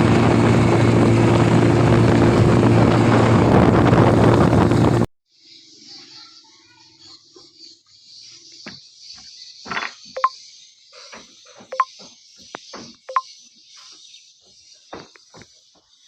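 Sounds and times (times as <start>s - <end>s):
high-pitched insect chirring: 5.4s - 10.7s, 13.1s - 13.3s
sharp knocks and clicks: 11.6s - 12.0s, 12.6s - 13.2s.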